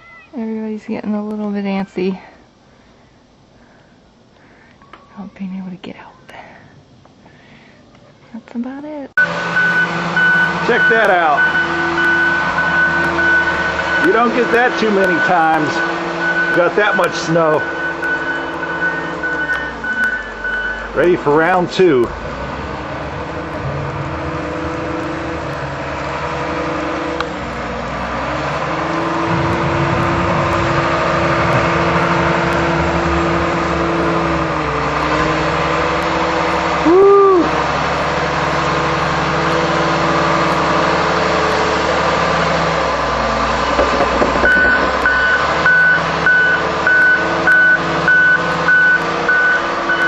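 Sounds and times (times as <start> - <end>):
rising and falling tone: 9.2 - 16.9, 22.0 - 36.1
backup alarm beeping: 9.2 - 21.3, 43.8 - 50.0
diesel engine running: 9.2 - 50.0.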